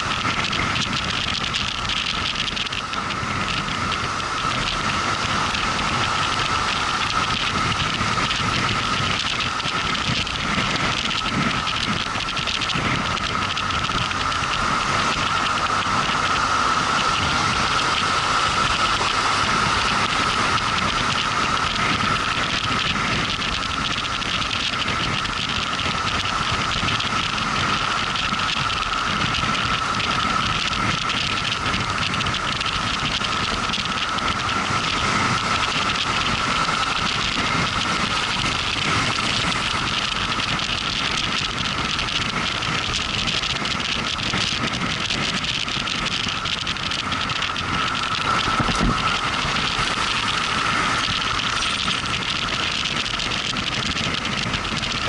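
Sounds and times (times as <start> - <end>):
motorcycle whine: 0.0 - 55.0
wind and road noise: 0.0 - 55.0.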